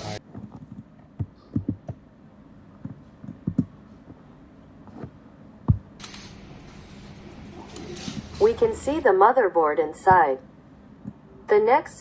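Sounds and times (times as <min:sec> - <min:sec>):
soft low knocks and bumps: 0:02.8 - 0:04.2, 0:04.8 - 0:06.0.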